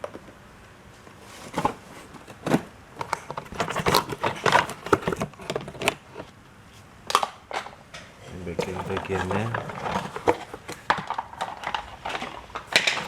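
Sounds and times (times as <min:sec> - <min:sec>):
packaging rustling: 0:01.3 - 0:06.3, 0:08.4 - 0:13.0.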